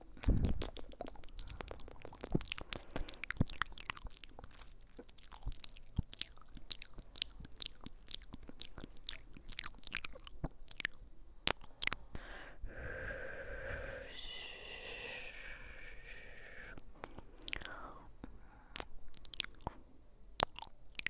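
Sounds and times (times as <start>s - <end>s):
crisp clicks and crackles: 0.2s - 12.0s.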